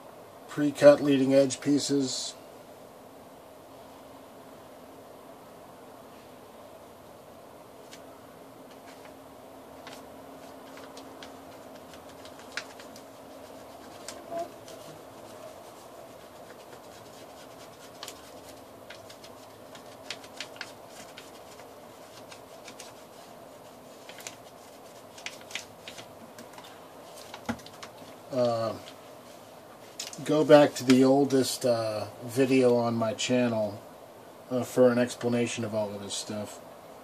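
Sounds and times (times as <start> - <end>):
faint steady hum: 0.0 - 37.0
paper tapping and rustling: 8.7 - 9.2, 9.8 - 29.0.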